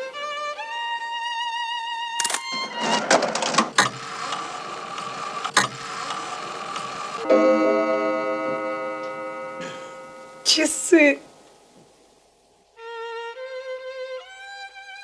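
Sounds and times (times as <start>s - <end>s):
sharp clicks: 2.2s - 2.5s, 3.5s - 7.0s
ringing chord: 7.2s - 11.4s.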